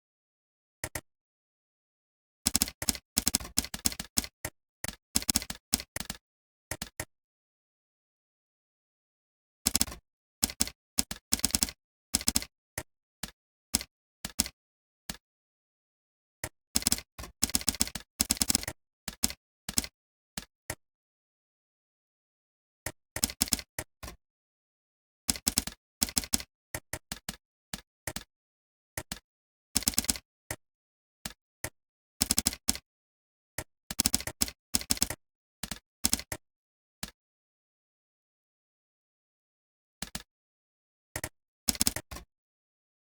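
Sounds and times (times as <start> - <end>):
keyboard typing: 41.2 - 42.2.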